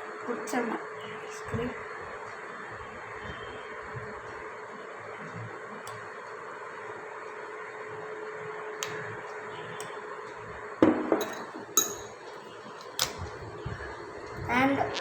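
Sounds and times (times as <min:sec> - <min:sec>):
steady background hum: 0:00.0 - 0:15.0
metal spoon clinking on glass: 0:11.2 - 0:12.2.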